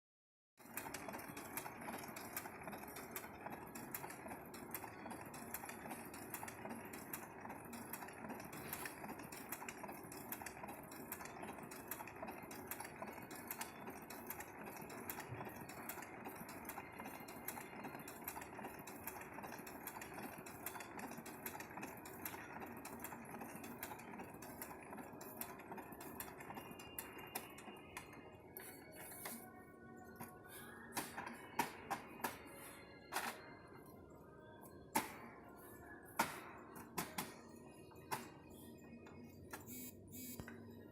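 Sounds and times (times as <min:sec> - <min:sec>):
small machine clattering: 0:00.6 - 0:28.2.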